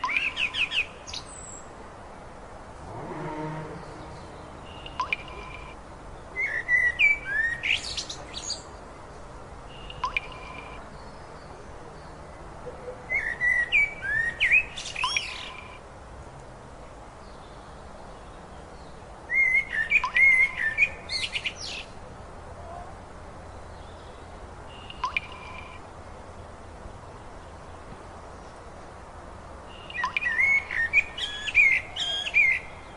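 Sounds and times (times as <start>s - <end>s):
songbird whistling song: 0.0s - 1.7s, 3.8s - 5.7s, 6.4s - 8.7s, 12.8s - 15.7s, 19.3s - 21.9s, 29.7s - 32.9s.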